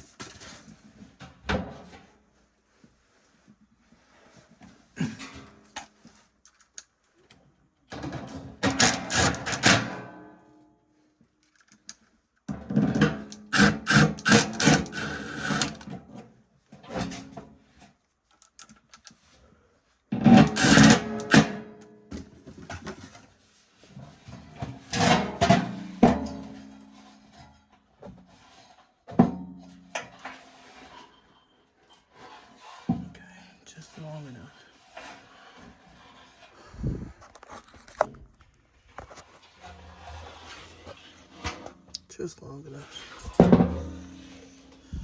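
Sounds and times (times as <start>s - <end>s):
metal parts clanking and rattling: 8.0s - 10.0s.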